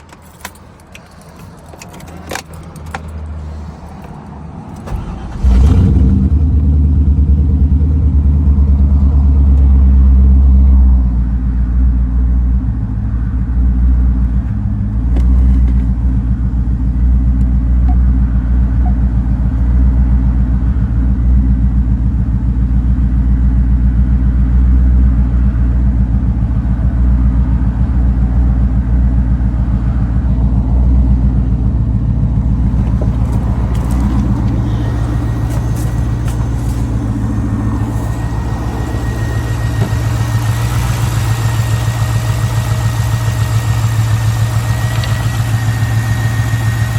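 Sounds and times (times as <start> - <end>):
engine idling roughly: 14.0 - 46.9.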